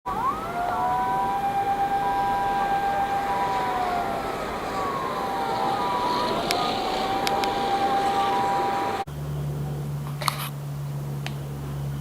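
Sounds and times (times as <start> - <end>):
emergency siren wailing: 0.0 - 9.1
steady siren tone: 0.0 - 9.1.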